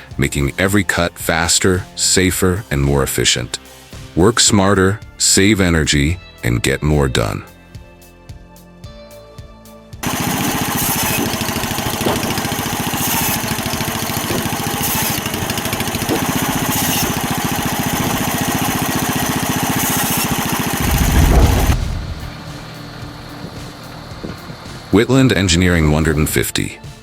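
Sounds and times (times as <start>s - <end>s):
machine engine pulsing: 10.0s - 25.0s.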